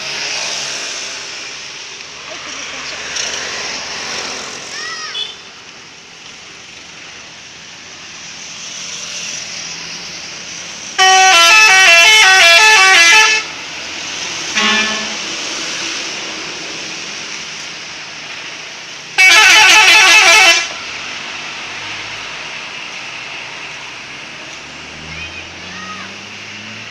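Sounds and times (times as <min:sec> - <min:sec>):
street noise: 0:00.0 - 0:26.9
low horn honk: 0:11.0 - 0:13.5, 0:14.5 - 0:15.4, 0:19.2 - 0:20.8
bus multi-tone musical horn: 0:11.0 - 0:13.6, 0:14.5 - 0:15.4, 0:19.2 - 0:20.9.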